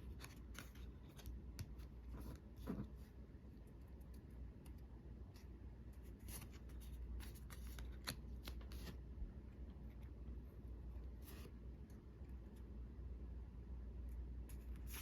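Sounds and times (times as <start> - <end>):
cards clicking and rustling: 6.2 - 9.0.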